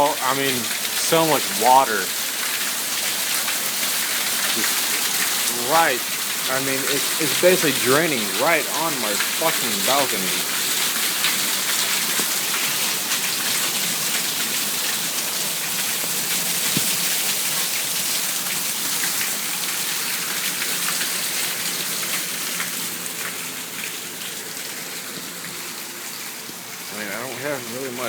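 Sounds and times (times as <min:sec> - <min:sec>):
water drops ticking: 0:00.0 - 0:02.6, 0:04.4 - 0:12.4
rain pouring on a balcony: 0:00.0 - 0:28.0.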